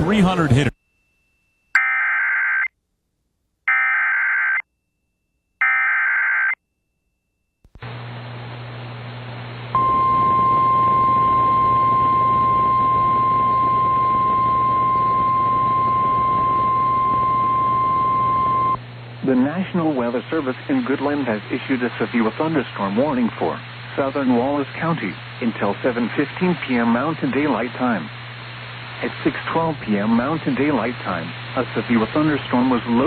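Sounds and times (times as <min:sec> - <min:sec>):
hum with radio static: 0:00.0 - 0:00.8, 0:07.7 - 0:33.0
steady weather alarm tone: 0:00.0 - 0:02.7, 0:09.7 - 0:18.8.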